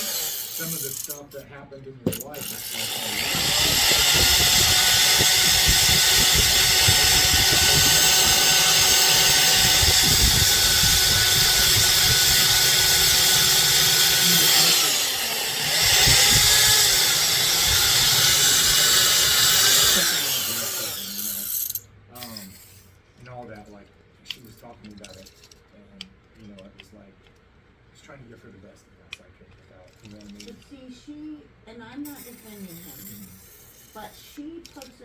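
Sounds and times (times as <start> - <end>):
power tool motor whining: 0.0 - 1.3, 2.1 - 22.8, 32.1 - 35.0.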